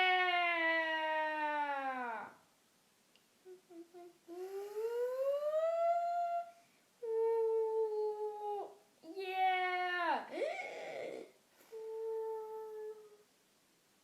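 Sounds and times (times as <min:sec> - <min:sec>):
person humming whimperingly: 0:03.4 - 0:09.6, 0:10.3 - 0:13.3.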